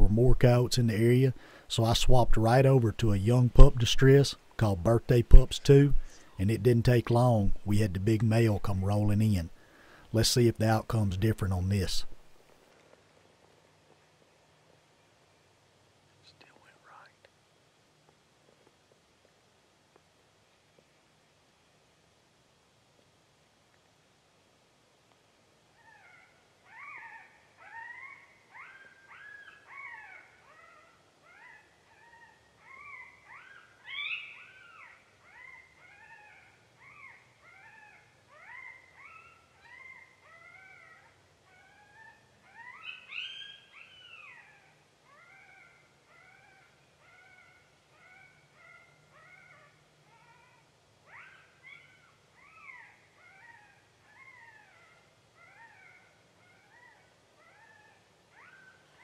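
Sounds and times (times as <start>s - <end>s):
electronic coyote pup whines and yelps: 25.7s - 59.0s.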